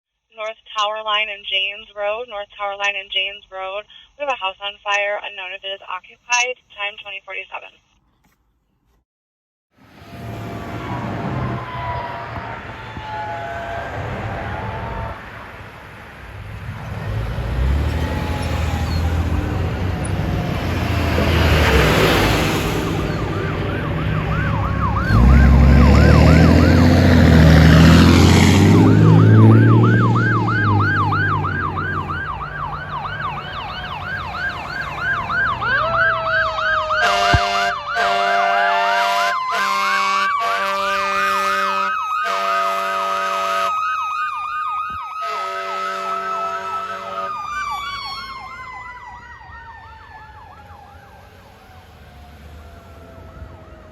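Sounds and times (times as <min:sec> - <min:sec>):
truck engines passing: 0:09.8 - 0:53.9
siren rising in pitch: 0:09.9 - 0:15.4, 0:17.1 - 0:53.9
electronic siren yelping: 0:10.6 - 0:15.2, 0:23.0 - 0:53.9
air horn blasts: 0:36.9 - 0:43.7, 0:45.2 - 0:47.5.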